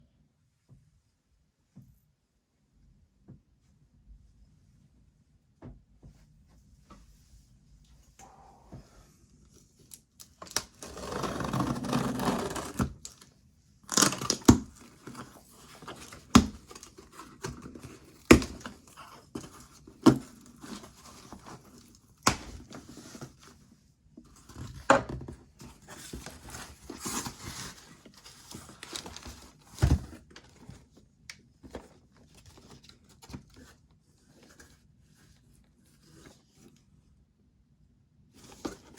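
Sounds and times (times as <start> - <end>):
packaging rustling and tearing: 10.2 - 23.5, 25.6 - 30.8.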